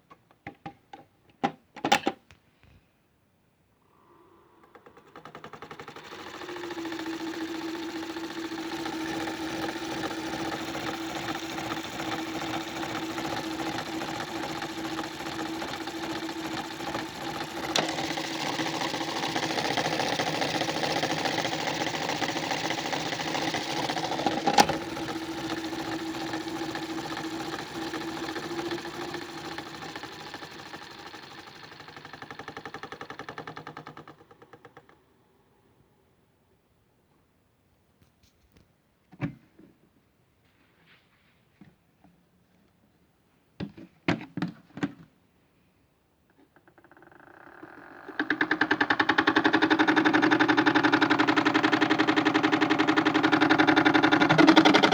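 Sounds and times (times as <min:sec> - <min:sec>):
small electric motor humming: 0:05.4 - 0:33.2, 0:47.7 - 0:54.9
drum rattling and knocking: 0:07.3 - 0:31.0, 0:48.1 - 0:54.9.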